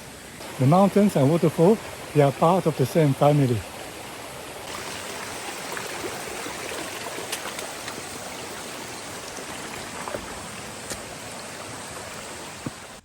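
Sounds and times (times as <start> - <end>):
stream running: 0.0 - 13.0.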